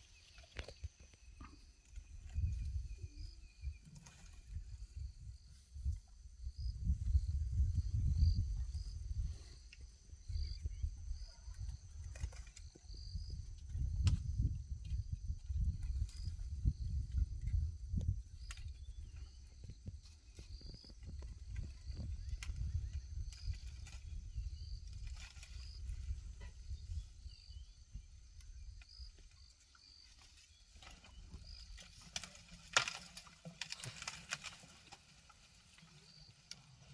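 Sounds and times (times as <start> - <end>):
insects chirping: 0.0 - 36.9
wind rumble on microphone: 0.6 - 29.3
tree branches cracking: 30.9 - 35.1.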